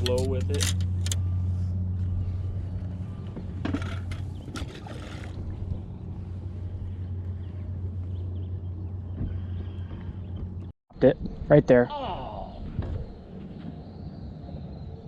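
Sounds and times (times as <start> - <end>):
handling clicks and rustles: 0.0 - 1.3
boat motor humming: 0.0 - 10.7.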